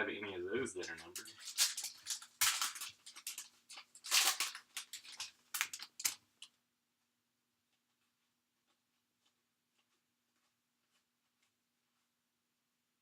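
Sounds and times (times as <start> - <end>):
foil wrapper crinkling: 1.0 - 6.5.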